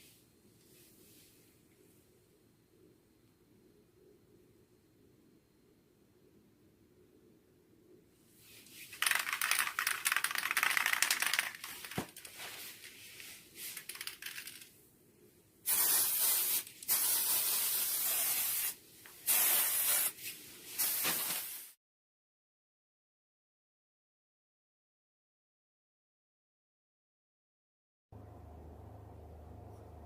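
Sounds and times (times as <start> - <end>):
aerosol spray can hissing: 15.7 - 20.2, 20.8 - 21.8.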